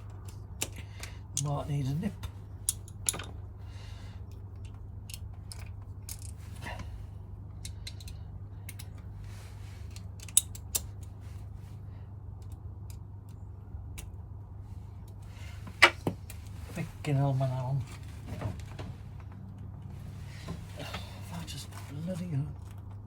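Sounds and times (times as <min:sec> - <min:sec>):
steady low hum: 0:00.0 - 0:23.0
metallic clicks of hand tools: 0:02.6 - 0:03.3, 0:09.9 - 0:11.1.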